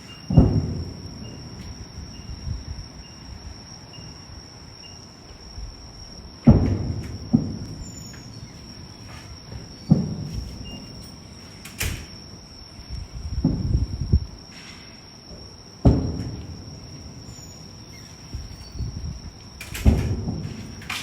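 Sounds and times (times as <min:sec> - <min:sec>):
distant fireworks booming: 0:00.0 - 0:04.2, 0:05.4 - 0:21.0
crickets trilling: 0:00.0 - 0:21.0.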